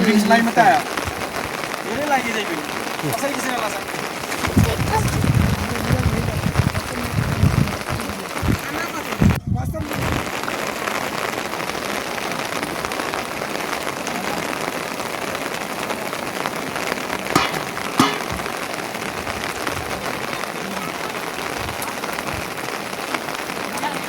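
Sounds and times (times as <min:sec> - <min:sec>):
rain pattering on a surface: 0:00.0 - 0:24.0
short knocks: 0:17.4 - 0:18.6.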